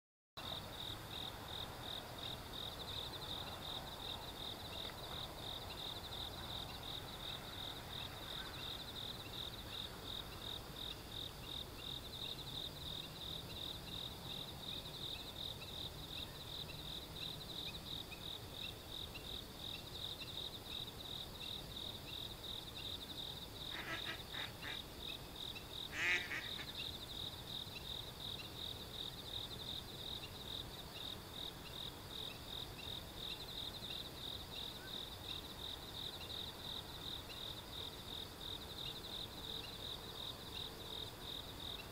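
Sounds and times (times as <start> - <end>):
insects chirping trill: 0.4 - 41.9
duck calls: 23.7 - 24.8, 25.9 - 26.8
loud bird call: 23.7 - 24.8, 25.9 - 26.8.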